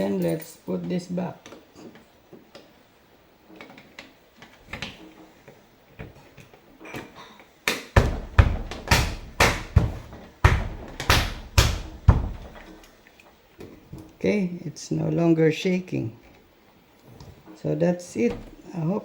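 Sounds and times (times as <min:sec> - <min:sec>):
handle knocking against door: 0:08.0 - 0:12.8.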